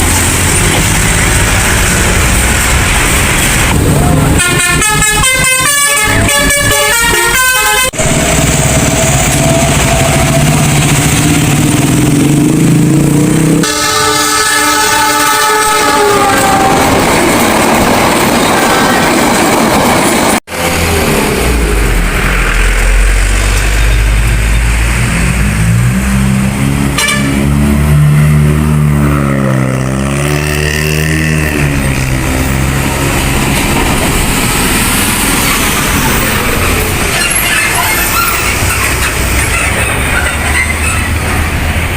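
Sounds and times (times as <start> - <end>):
diesel engine revving: 0.0 - 18.5, 19.2 - 41.9
multi-tone bus horn jingle: 4.2 - 8.2, 13.6 - 17.1, 26.6 - 27.9.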